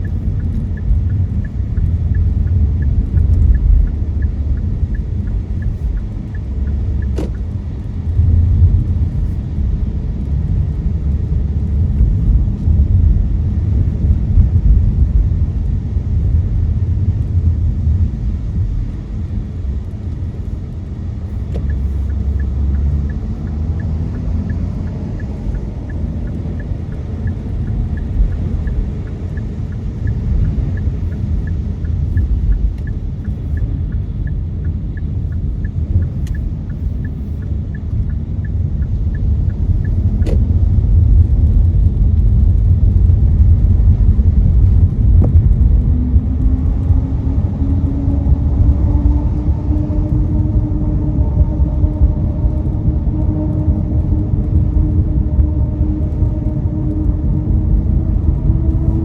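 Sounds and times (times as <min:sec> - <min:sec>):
faint regular ticking: 0:00.0 - 0:12.3, 0:18.6 - 0:43.7
car road and engine rumble: 0:00.0 - 0:59.0.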